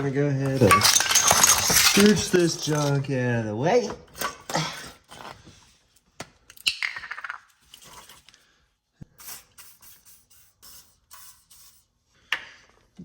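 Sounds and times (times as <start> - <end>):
metal hand tools clinking: 0.4 - 3.1.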